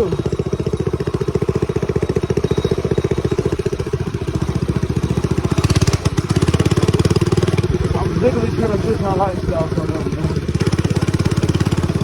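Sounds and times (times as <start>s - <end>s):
small engine puttering: 0.0s - 12.0s.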